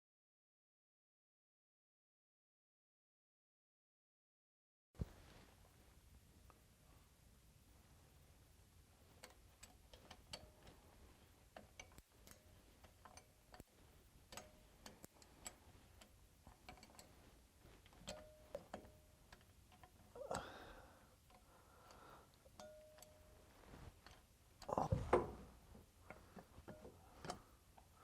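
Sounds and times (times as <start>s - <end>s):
hand tools clicking and tapping metal: 9.2s - 28.0s.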